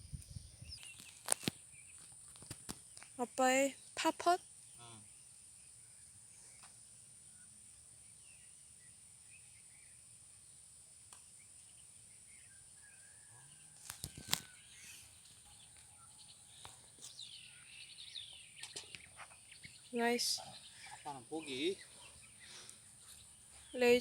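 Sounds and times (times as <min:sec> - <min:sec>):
bird chirps: 0:11.2 - 0:24.0.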